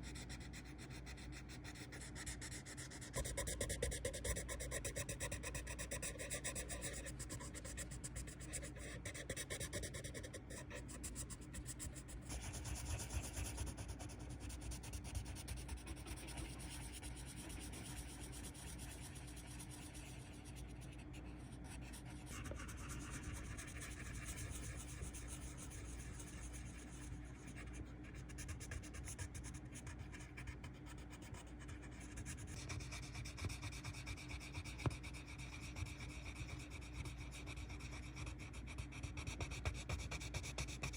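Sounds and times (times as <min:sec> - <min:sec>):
colored pencil shading on paper: 0:00.1 - 0:40.9.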